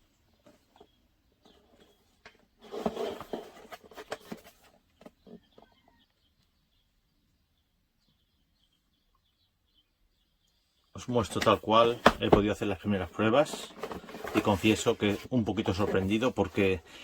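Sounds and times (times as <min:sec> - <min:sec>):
rustling and clattering: 0:00.4 - 0:05.7, 0:11.3 - 0:16.8.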